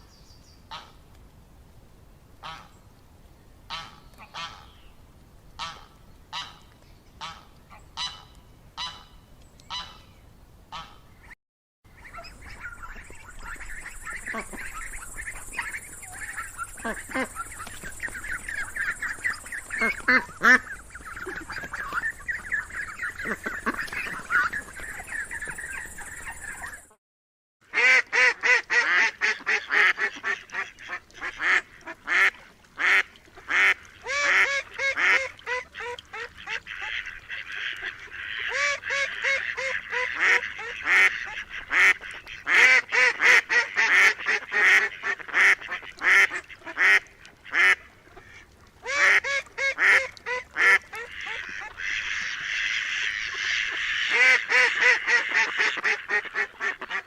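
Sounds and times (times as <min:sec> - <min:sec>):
ducks calling: 0:10.7 - 0:27.0, 0:27.8 - 0:57.0
geese honking: 0:12.0 - 0:26.9.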